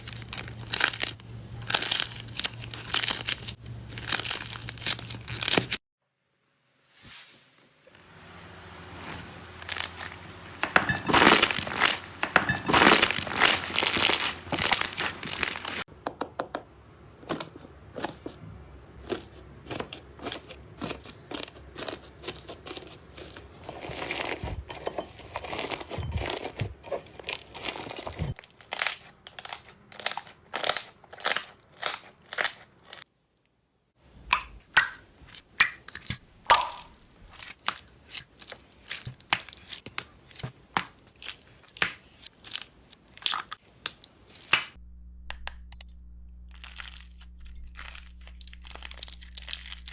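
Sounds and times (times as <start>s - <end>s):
slime crackling and popping: 0.0s - 5.8s, 10.6s - 15.9s, 46.5s - 49.9s.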